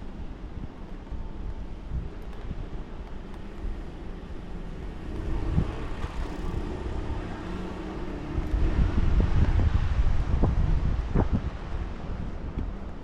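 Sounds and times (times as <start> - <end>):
wind buffeting microphone: 0.1 - 13.0
vehicle engine passing: 5.0 - 10.0.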